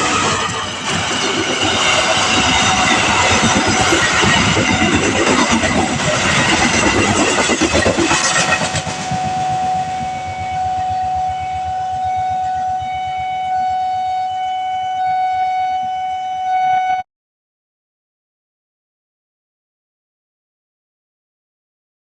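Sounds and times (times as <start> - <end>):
train passing: 0.0 - 14.4
level crossing alarm siren: 0.0 - 17.1.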